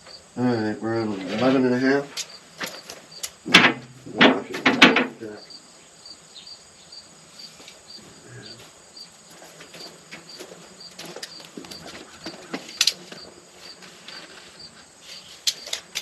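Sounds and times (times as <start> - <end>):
insects chirping: 0.0 - 16.0
sharp knocks: 3.4 - 5.4.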